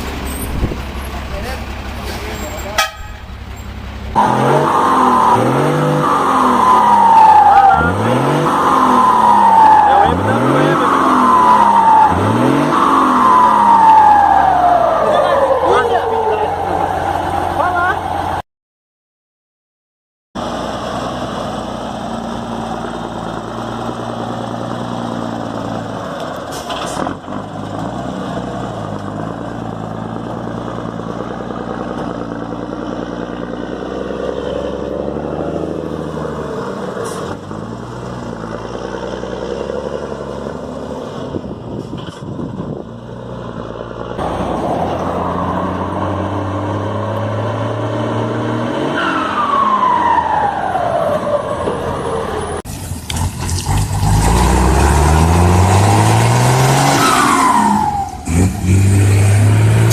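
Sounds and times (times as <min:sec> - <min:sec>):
diesel truck engine revving: 0:00.0 - 0:18.4, 0:20.4 - 0:59.9
falling turbo whistle: 0:04.2 - 0:10.2.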